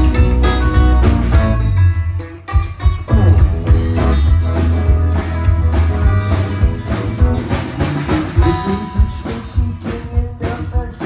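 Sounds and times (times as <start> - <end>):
rock band playing: 0.0 - 11.0.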